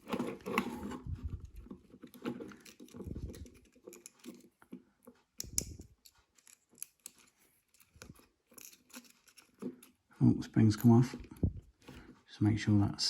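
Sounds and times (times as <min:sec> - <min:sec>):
plastic parts clicking: 0:00.0 - 0:04.8, 0:05.4 - 0:10.0.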